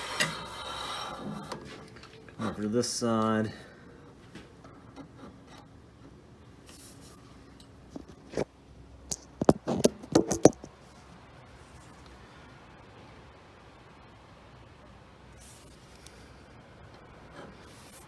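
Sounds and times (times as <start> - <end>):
sharp clicks and taps: 9.1 - 10.7.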